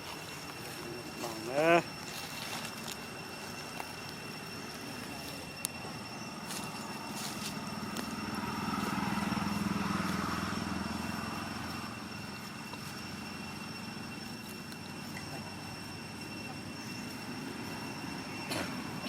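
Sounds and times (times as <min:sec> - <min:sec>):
vehicle engine passing: 0:07.5 - 0:13.2.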